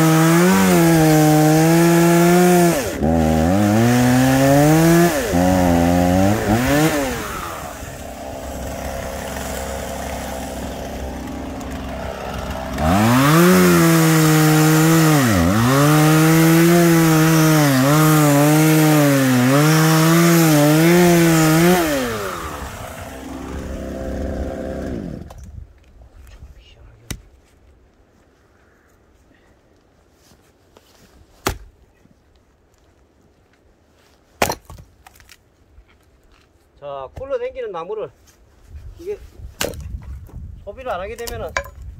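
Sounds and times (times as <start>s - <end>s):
chainsaw cutting wood: 0.0s - 25.5s.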